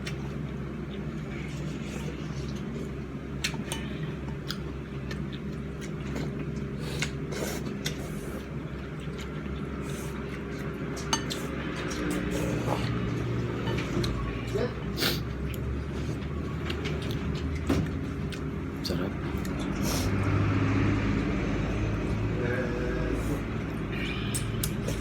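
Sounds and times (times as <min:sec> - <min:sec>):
low background hum: 0:00.0 - 0:25.0
utensils clinking against a bowl: 0:10.9 - 0:14.3.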